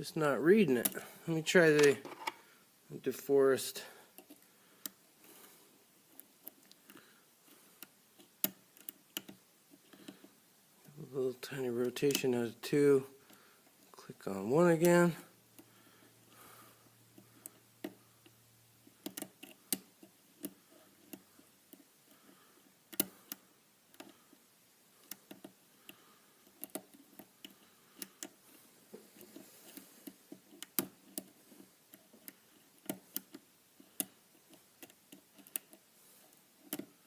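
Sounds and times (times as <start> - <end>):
lock pick clicking: 19.0 - 21.8, 26.4 - 28.4.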